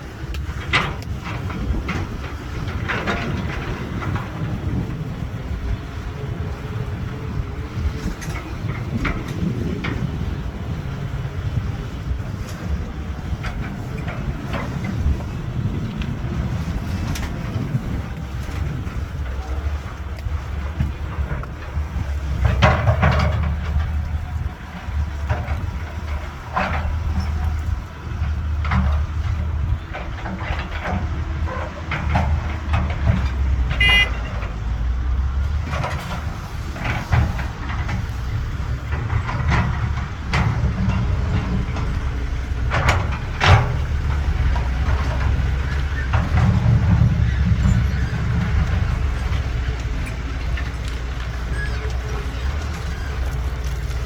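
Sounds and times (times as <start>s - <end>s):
excavator diesel engine rumbling: 0.0s - 54.0s
short noisy bursts: 33.8s - 34.3s.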